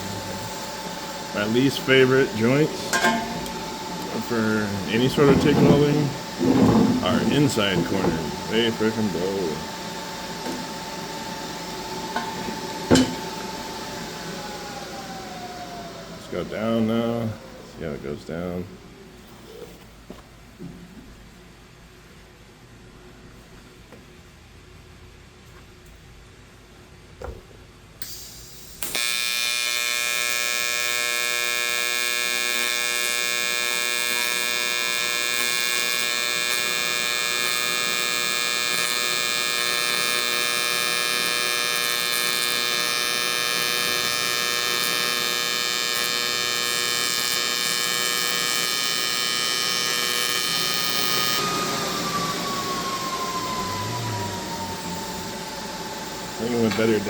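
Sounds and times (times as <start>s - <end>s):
welding arc buzz: 0.0s - 19.8s, 28.0s - 57.0s
welder click: 0.6s - 9.1s, 11.5s - 13.8s.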